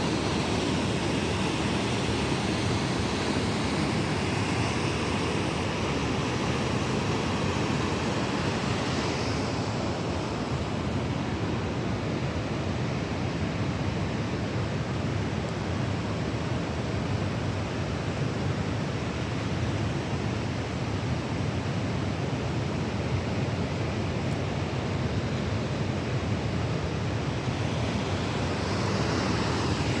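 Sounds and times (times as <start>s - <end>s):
creek water rushing: 26.9s - 30.0s.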